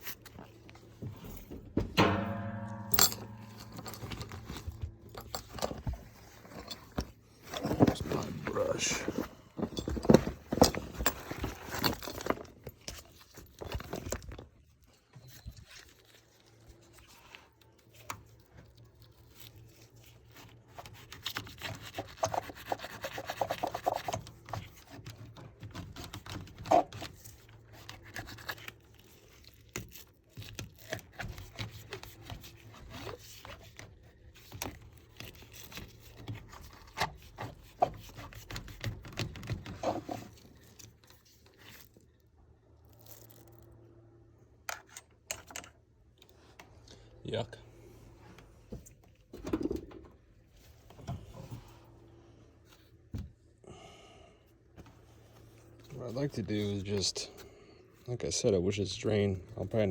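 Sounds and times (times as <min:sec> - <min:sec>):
sharp knocks: 0:01.8 - 0:04.6.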